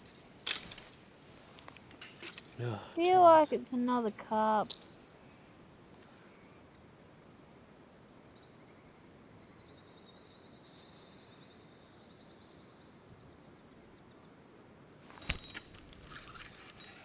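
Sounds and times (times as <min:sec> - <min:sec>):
handling clatter: 0:00.0 - 0:05.2, 0:15.1 - 0:17.0.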